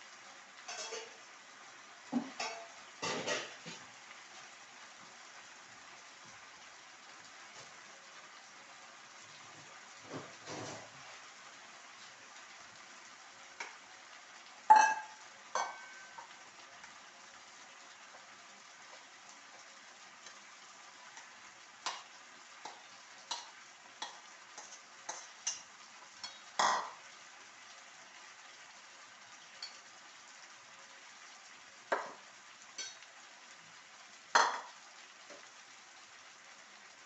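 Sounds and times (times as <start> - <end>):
food sizzling: 0.0 - 37.0
spoon knocking and scraping pot: 0.7 - 1.2, 2.2 - 3.8.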